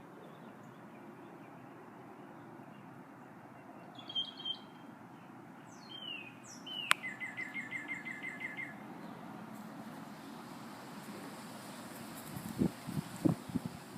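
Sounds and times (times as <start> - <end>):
songbird calling: 0.0 - 9.7.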